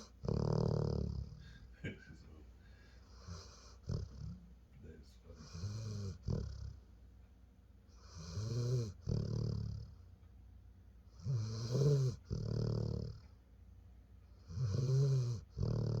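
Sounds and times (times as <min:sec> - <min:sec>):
dog snoring: 0:00.0 - 0:01.6, 0:03.1 - 0:04.4, 0:05.2 - 0:06.8, 0:07.9 - 0:10.0, 0:11.1 - 0:13.3, 0:14.3 - 0:16.0.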